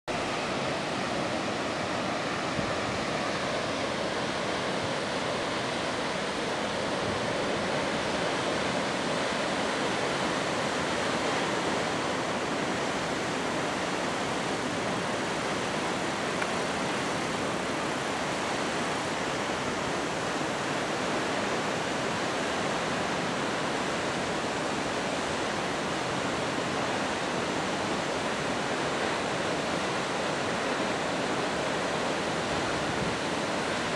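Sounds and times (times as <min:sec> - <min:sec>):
waterfall rushing: 0:00.1 - 0:33.9.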